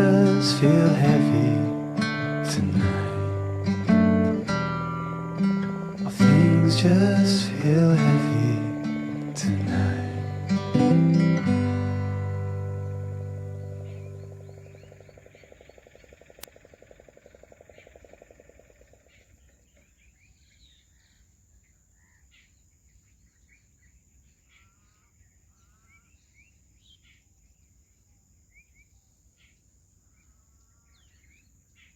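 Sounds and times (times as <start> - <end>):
acoustic guitar chord ringing: 0.0 - 15.1
steady high hiss: 0.0 - 15.2
birds chirping and trilling: 0.0 - 31.9.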